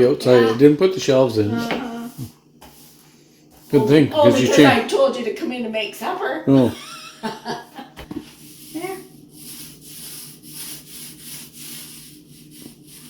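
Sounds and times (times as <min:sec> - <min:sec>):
paint brush strokes rubbing: 0:00.4 - 0:05.2, 0:07.5 - 0:13.0.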